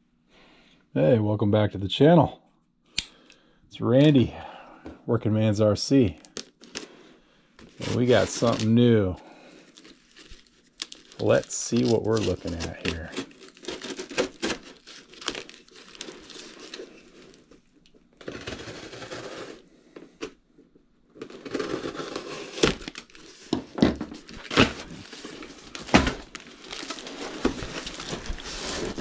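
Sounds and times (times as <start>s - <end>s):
packaging crinkling and tearing: 6.2s - 7.0s, 7.6s - 19.6s, 21.2s - 29.0s.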